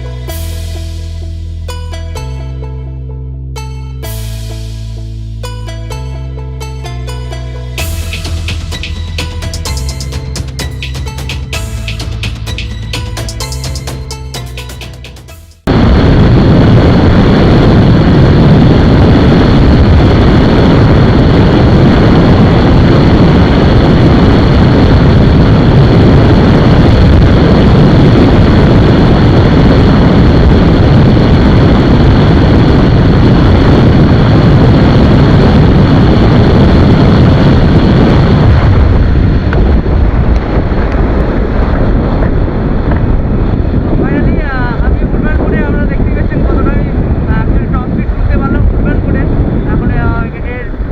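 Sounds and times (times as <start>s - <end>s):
wind buffeting microphone: 15.6s - 50.9s.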